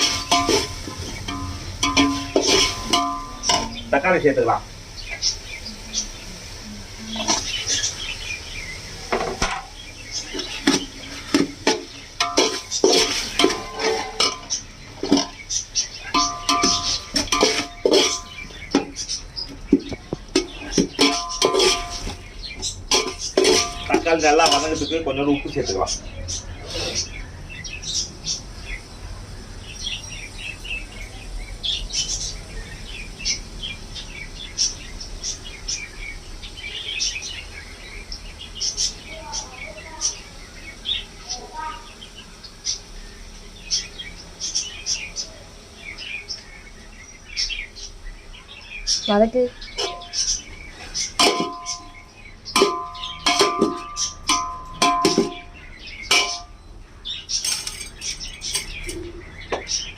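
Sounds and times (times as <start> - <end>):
metal spoon scraping a pot: 0.0 - 3.8, 10.3 - 15.4, 16.0 - 19.0, 20.3 - 24.8, 49.8 - 52.0
pot ringing: 0.0 - 4.0, 11.3 - 15.4, 16.0 - 18.9, 20.4 - 22.2, 22.9 - 24.8, 49.8 - 50.2, 51.2 - 56.6
steady low hum: 0.0 - 24.9
small birds chirping: 0.0 - 59.9.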